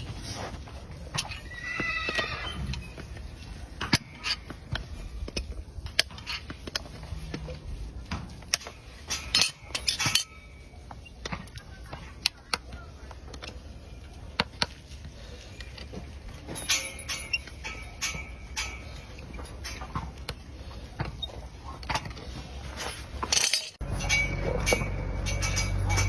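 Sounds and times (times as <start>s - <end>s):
metallic clicks of farrier's tools: 2.1s - 26.0s.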